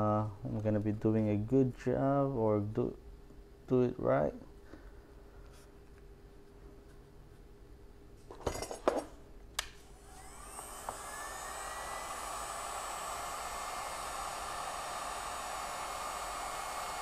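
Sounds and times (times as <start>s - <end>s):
heat gun fan whine and rush: 9.6s - 17.0s.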